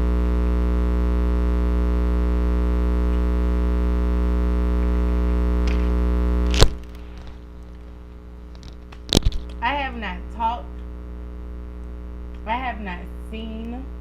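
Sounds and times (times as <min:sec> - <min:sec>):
electrical mains hum: 0:00.0 - 0:14.0
sharp click: 0:06.5 - 0:06.9.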